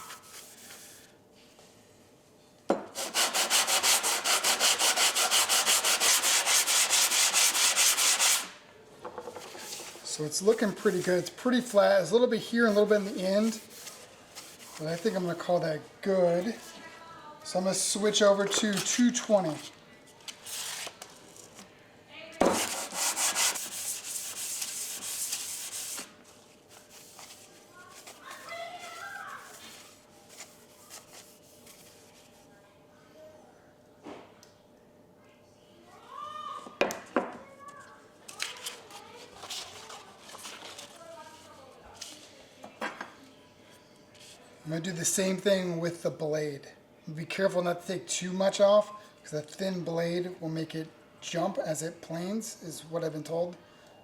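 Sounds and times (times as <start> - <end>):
plane sole scraping on sandpaper: 3.0 - 8.5, 22.5 - 26.1.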